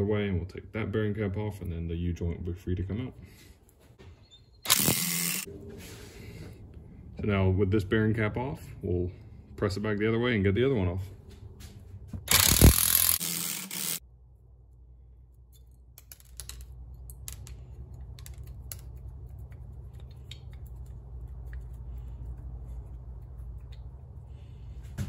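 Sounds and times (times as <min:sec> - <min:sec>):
low steady hum: 0:14.0 - 0:25.0.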